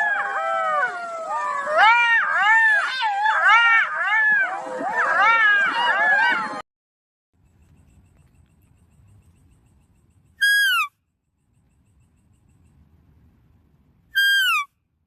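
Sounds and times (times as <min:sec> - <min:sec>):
animal whistled call: 0:10.4 - 0:10.9, 0:14.1 - 0:14.7.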